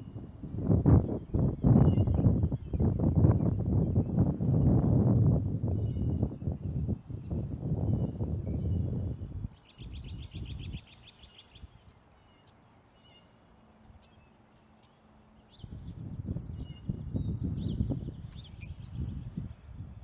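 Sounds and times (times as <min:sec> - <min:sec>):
low rumbling on microphone: 0:00.0 - 0:10.8, 0:15.6 - 0:20.0.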